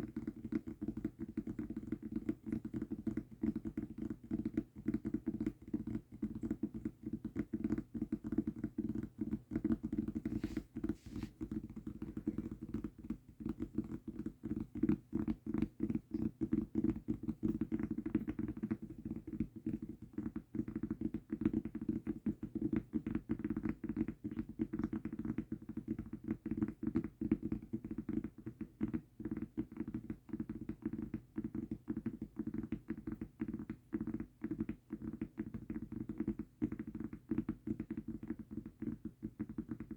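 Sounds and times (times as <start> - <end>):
fingertips tapping on mousepad: 10.1 - 11.4.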